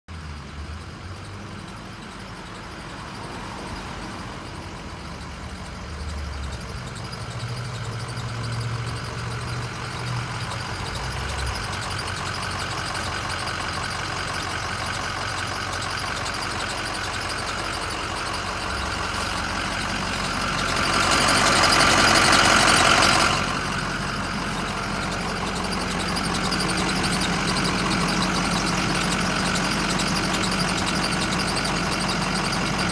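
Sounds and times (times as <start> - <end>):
engine running: 0.1 - 32.9
squeaky noise: 6.8 - 32.9.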